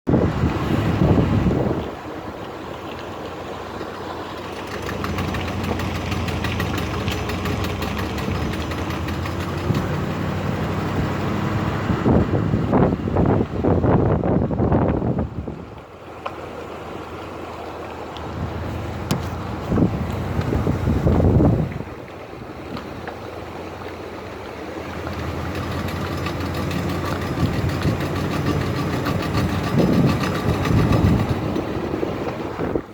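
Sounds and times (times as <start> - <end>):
wind buffeting on microphone: 0.1 - 2.4, 4.6 - 15.9, 18.2 - 23.0, 25.0 - 32.9
car engine humming: 1.8 - 14.0, 15.8 - 32.9
rapid clicking from car drivetrain: 4.4 - 11.1, 25.1 - 32.4
rapid even ticking: 4.5 - 10.9, 25.2 - 31.7.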